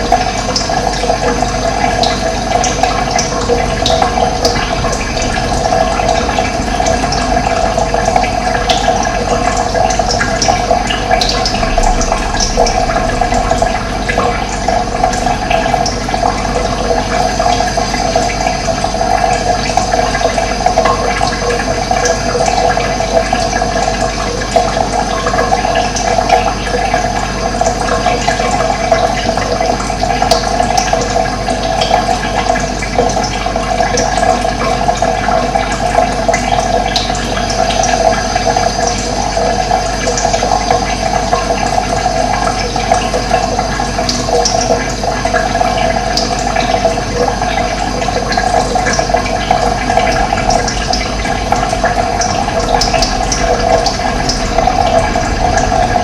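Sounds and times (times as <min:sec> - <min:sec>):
running water: 0:00.0 - 0:56.0.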